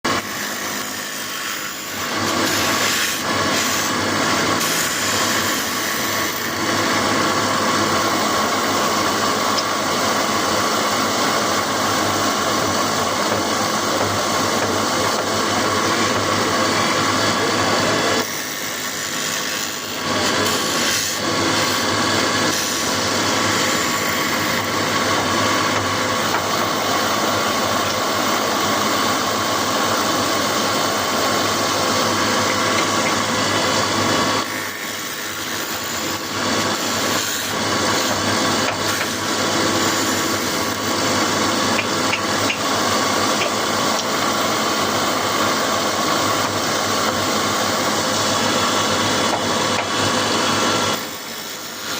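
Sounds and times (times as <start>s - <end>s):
scraping wood cutting: 0.0s - 51.9s
woodworking machine motor drone: 0.0s - 51.9s.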